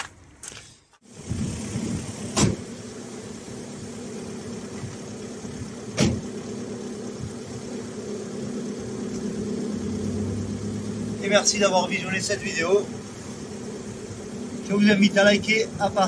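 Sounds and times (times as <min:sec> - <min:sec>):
diesel engine idling: 0:08.9 - 0:16.0.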